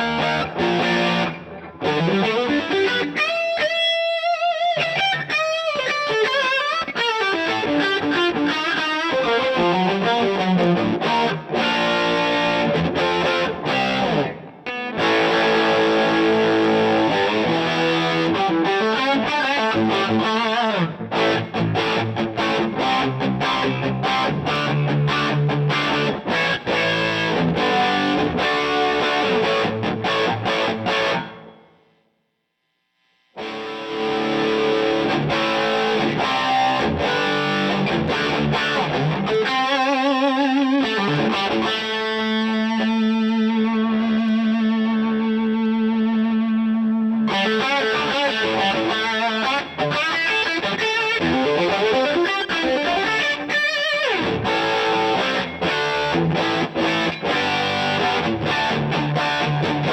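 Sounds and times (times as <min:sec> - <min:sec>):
electric guitar riffing: 0:00.0 - 0:31.8, 0:33.4 - 0:59.9.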